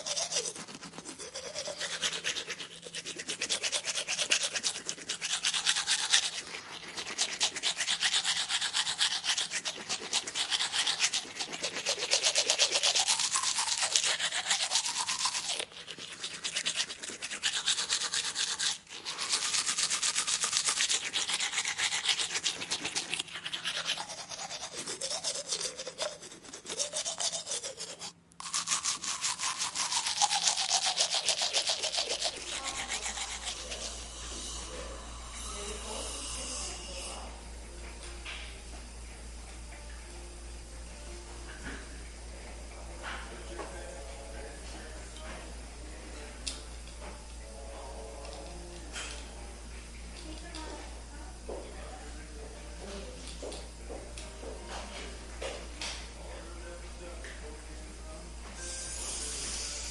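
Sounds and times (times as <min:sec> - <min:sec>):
dental instrument buzzing: 0:00.0 - 0:42.3, 0:58.6 - 0:59.9.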